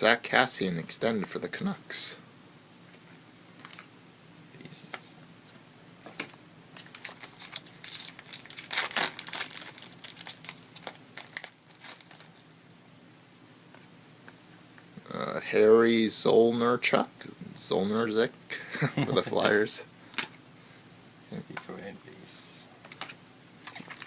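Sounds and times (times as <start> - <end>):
foil wrapper crinkling: 6.8 - 12.5, 23.6 - 24.0
wrapper tearing: 6.8 - 12.5, 23.6 - 24.0.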